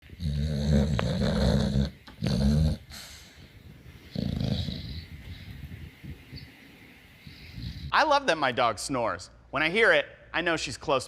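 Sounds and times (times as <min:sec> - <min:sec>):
dog snoring: 0:00.1 - 0:03.1, 0:04.1 - 0:05.1.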